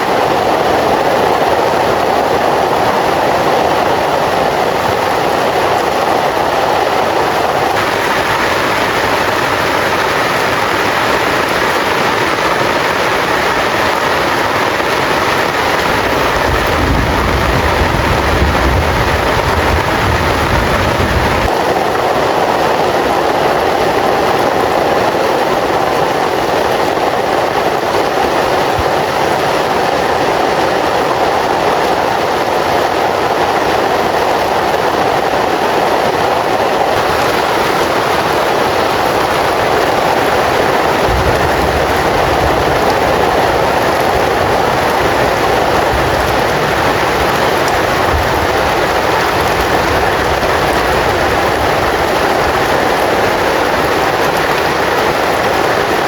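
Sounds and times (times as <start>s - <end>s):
heavy rain: 0.0s - 56.0s
low rumble: 15.8s - 21.5s, 41.0s - 52.0s.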